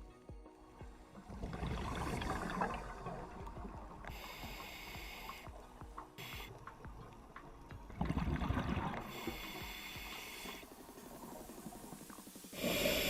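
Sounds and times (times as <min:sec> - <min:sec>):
gurgle of exhaled bubbles: 0:01.2 - 0:04.3, 0:07.9 - 0:09.2
hissing regulator breaths: 0:03.6 - 0:06.9, 0:08.3 - 0:13.0.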